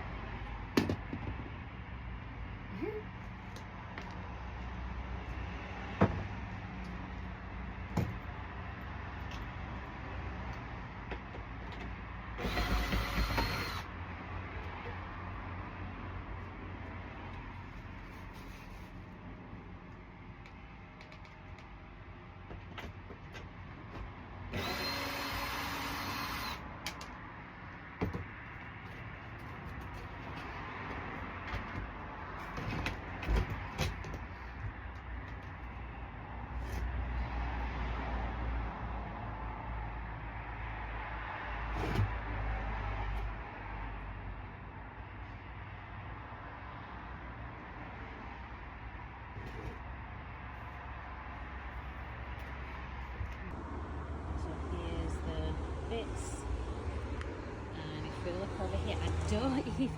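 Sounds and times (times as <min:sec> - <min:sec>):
power drill whine: 0:12.4 - 0:13.9, 0:24.5 - 0:26.6.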